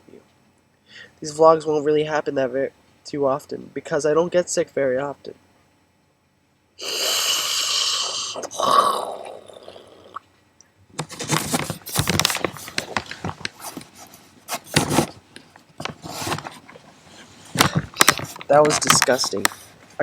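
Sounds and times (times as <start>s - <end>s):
congested nose sniffing: 6.8s - 8.3s
nose snort: 6.8s - 10.2s
scraping and rustling: 11.0s - 19.9s.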